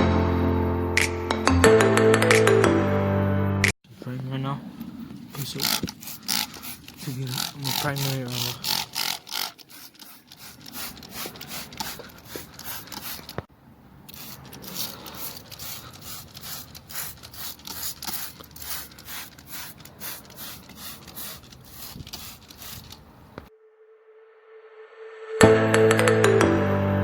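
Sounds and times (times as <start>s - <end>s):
rapid rhythmic scraping: 5.3s - 13.4s, 14.2s - 23.0s.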